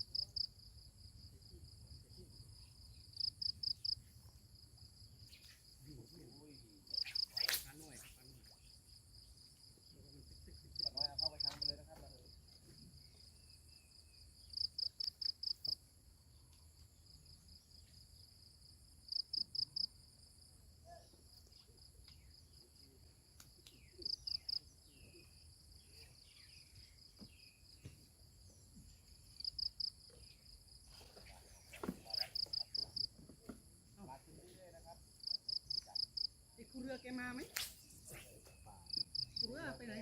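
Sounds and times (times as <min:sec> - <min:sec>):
crickets trilling: 0:00.0 - 0:40.0
quick insect chirps: 0:02.6 - 0:10.0, 0:12.9 - 0:15.8, 0:20.9 - 0:33.1, 0:35.2 - 0:39.7.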